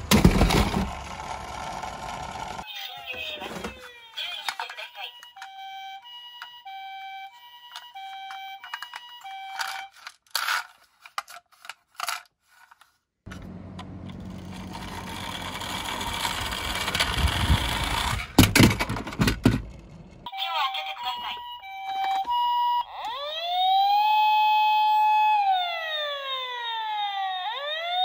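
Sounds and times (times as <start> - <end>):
toy cars rolling and whirring: 0.0 - 20.3
toy electronic two-tone siren: 2.6 - 10.6, 20.3 - 28.0
plastic toy clicks and clacks: 3.9 - 5.6, 7.7 - 12.9, 14.7 - 19.7.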